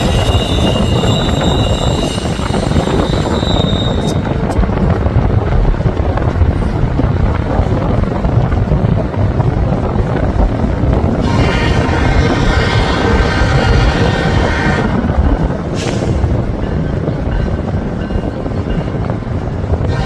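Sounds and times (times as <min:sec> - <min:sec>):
train wheels squealing: 0:00.0 - 0:04.3
train rumbling past: 0:00.0 - 0:20.0.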